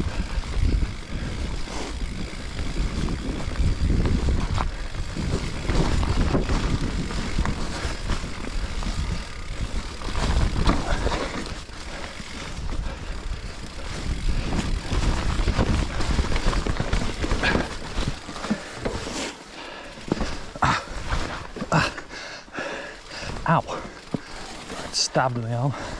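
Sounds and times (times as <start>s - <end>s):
wind on microphone: 0.0s - 18.2s
tyre rumble: 0.0s - 19.4s, 20.0s - 22.1s
bike frame clattering: 0.0s - 25.5s.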